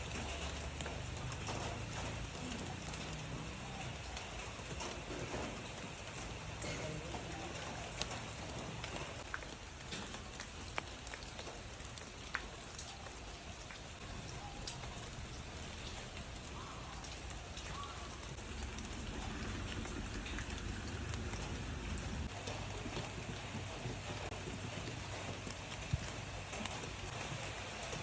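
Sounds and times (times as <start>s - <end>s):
light rain falling: 0.0s - 28.0s
sharp drips: 0.0s - 28.0s
low rumble: 14.0s - 22.3s.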